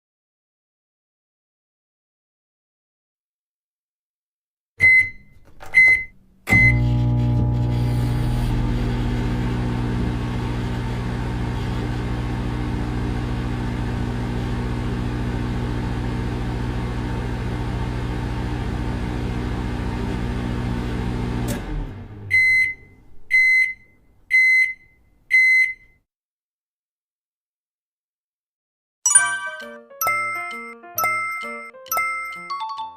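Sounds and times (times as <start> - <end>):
microwave click: 4.8 - 6.8
microwave keypad beeps: 4.8 - 6.9, 22.3 - 26.0, 29.1 - 32.9
microwave end-of-cycle beeps: 4.8 - 16.6, 20.6 - 26.0
microwave electrical hum: 5.8 - 23.9.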